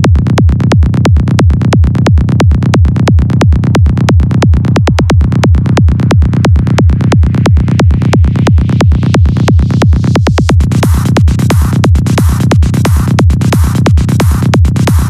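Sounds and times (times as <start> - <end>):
electronic dance music: 1.6 - 15.0.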